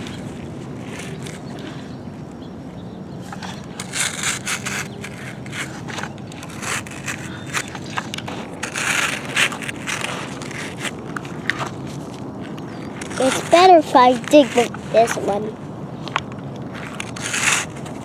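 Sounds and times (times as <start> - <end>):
toy digger scraping sand: 3.2 - 12.2, 12.8 - 15.5, 16.7 - 18.0.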